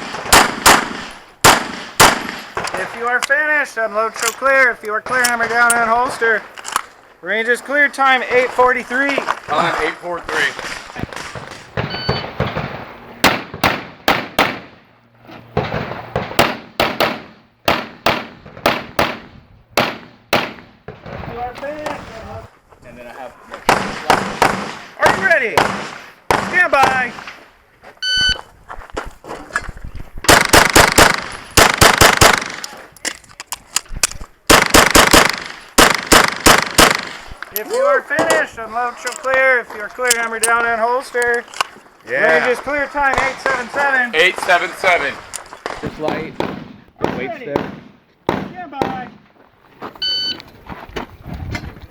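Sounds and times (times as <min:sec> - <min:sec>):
rapid pistol shots: 0:00.0 - 0:02.9, 0:11.8 - 0:14.8, 0:15.6 - 0:21.2, 0:23.7 - 0:27.1, 0:30.3 - 0:32.7, 0:34.5 - 0:37.3, 0:45.6 - 0:49.2.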